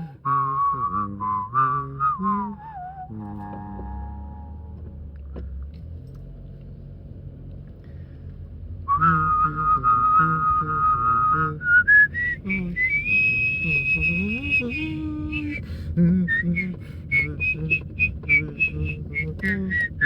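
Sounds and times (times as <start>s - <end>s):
person whistling a melody: 0.0s - 4.7s, 8.9s - 20.0s
low steady rumble: 0.0s - 20.0s.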